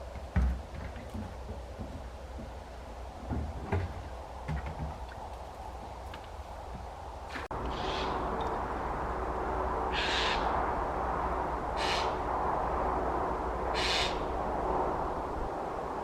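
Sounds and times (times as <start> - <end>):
bird harsh screeching call: 7.6 - 8.2, 9.9 - 10.6, 11.8 - 12.2, 13.8 - 14.2.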